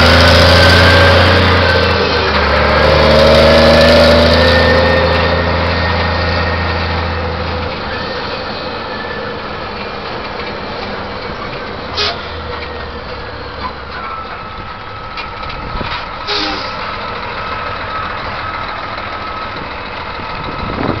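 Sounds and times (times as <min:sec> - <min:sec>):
vehicle engine running: 0:16.9 - 0:21.0.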